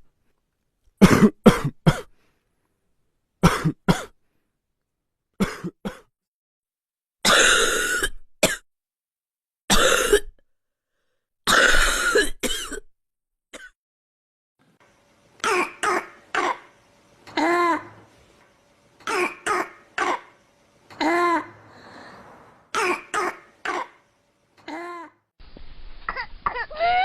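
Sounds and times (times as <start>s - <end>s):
person coughing: 1.0s - 2.1s, 3.4s - 4.2s, 5.4s - 6.1s, 7.3s - 8.6s, 9.7s - 10.3s, 11.5s - 12.9s, 15.4s - 16.7s, 19.0s - 20.4s, 22.8s - 24.0s.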